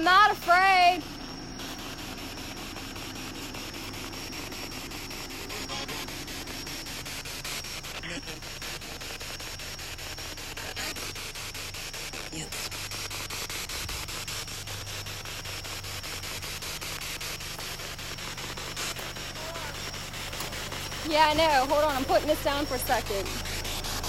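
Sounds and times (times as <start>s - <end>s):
pulsing radio static: 0.0s - 24.0s.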